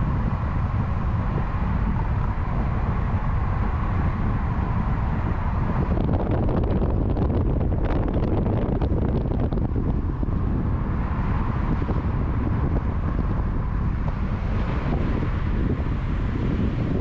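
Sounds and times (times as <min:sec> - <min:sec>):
steady low rumble: 0:00.0 - 0:17.0
wind buffeting microphone: 0:00.0 - 0:17.0.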